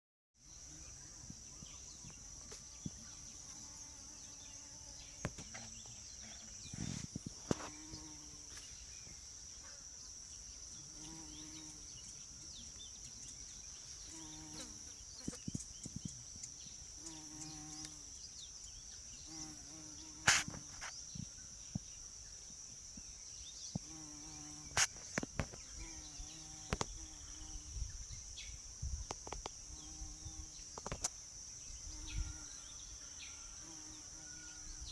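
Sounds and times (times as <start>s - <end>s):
insects shrilling: 0.5s - 22.2s.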